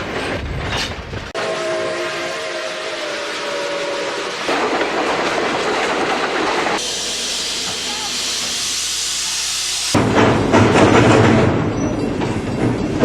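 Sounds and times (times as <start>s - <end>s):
locomotive steam hissing: 1.4s - 12.0s.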